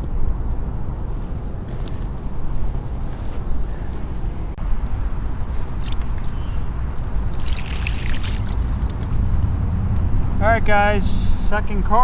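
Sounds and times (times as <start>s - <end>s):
steady low rumble: 0.0s - 12.0s
fish thrashing and splashing water: 5.6s - 6.4s, 7.0s - 9.0s.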